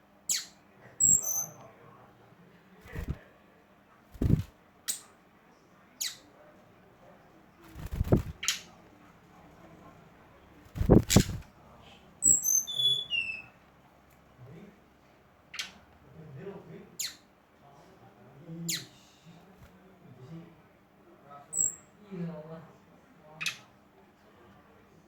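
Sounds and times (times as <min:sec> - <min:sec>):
songbird chirping: 0:00.3 - 0:01.6, 0:06.0 - 0:06.3
low thumps: 0:04.2 - 0:04.5, 0:10.7 - 0:11.4.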